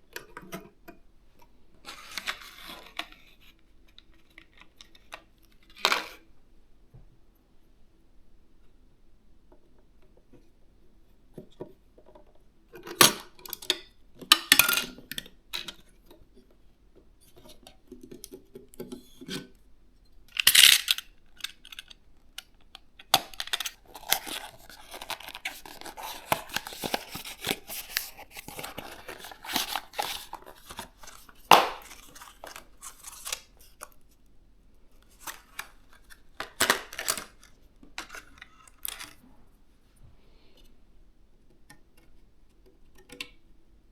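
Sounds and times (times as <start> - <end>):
packaging rustling and tearing: 23.2 - 33.9, 35.0 - 39.2.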